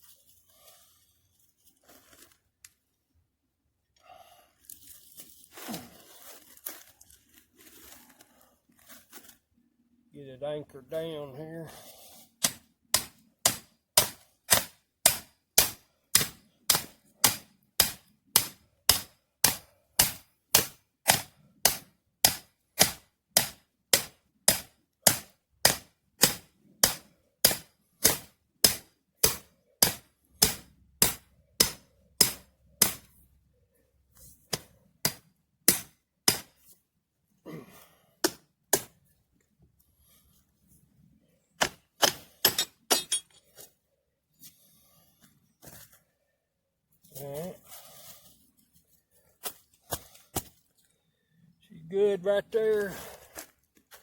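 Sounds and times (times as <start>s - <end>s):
hammer striking stake: 12.4s - 33.1s, 34.5s - 36.7s, 38.2s - 39.0s, 41.6s - 43.4s.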